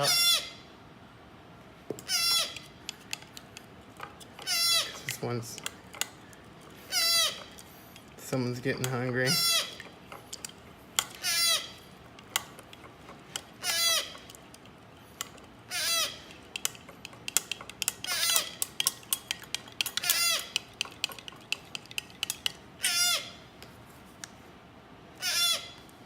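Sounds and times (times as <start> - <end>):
parrot chick begging calls: 0.0 - 0.6, 2.0 - 2.6, 4.4 - 5.0, 6.9 - 7.4, 9.3 - 9.8, 11.2 - 11.8, 13.6 - 14.2, 15.7 - 16.3, 22.8 - 23.4, 25.2 - 25.8
utensil clinking against dish: 2.6 - 6.8, 7.4 - 11.2, 11.8 - 15.6, 16.2 - 22.6.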